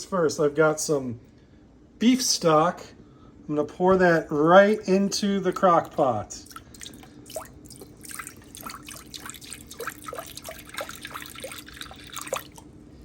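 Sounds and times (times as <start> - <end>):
faint steady hum: 0.0 - 13.0
liquid pouring and splashing: 5.5 - 12.7.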